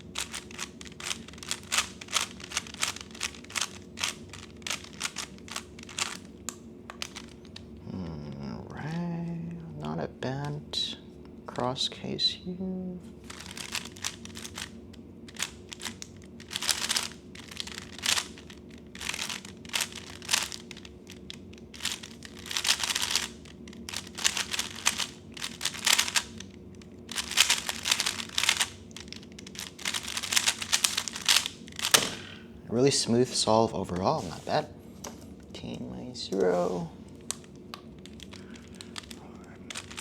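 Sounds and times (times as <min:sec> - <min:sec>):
puzzle cube plastic layers clicking: 0:00.2 - 0:07.6, 0:13.3 - 0:14.7, 0:15.3 - 0:26.5, 0:27.1 - 0:32.0, 0:37.2 - 0:40.0.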